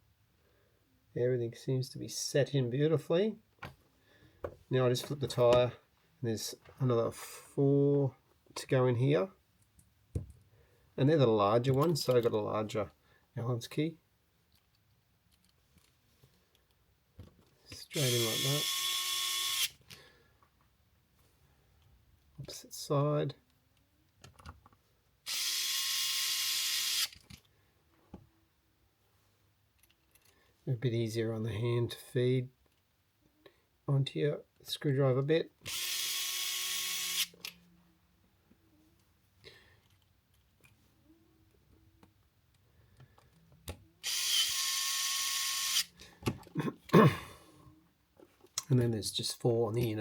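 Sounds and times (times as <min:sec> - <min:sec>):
electric screwdriver running: 0:18.0 - 0:19.7, 0:25.3 - 0:27.2, 0:35.7 - 0:37.4, 0:44.0 - 0:45.9.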